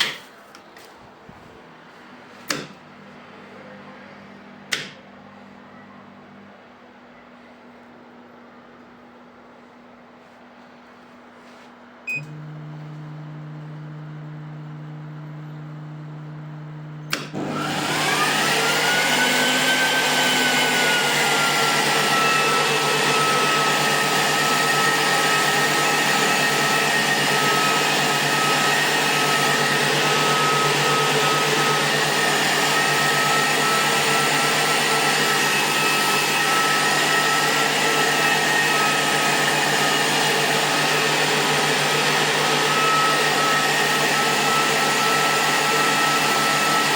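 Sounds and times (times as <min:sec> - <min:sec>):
electrical hum: 0:00.3 - 0:17.7
switch click: 0:04.7 - 0:05.0
fan motor whirring: 0:16.4 - 0:46.9.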